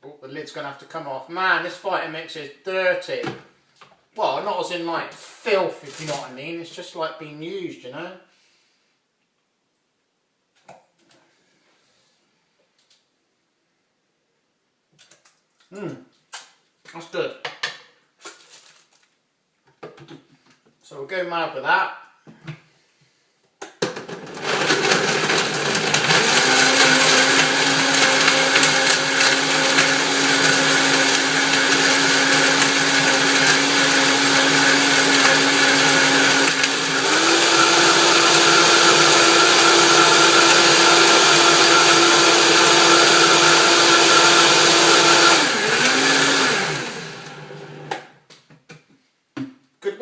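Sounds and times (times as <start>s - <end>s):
blender motor blending: 24.1s - 48.1s.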